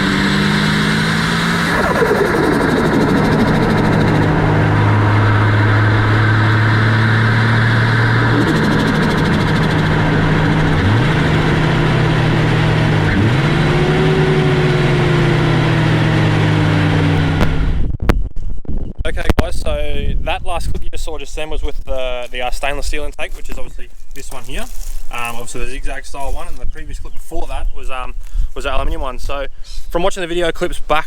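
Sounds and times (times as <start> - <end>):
turbocharged car engine: 0.0 - 18.0.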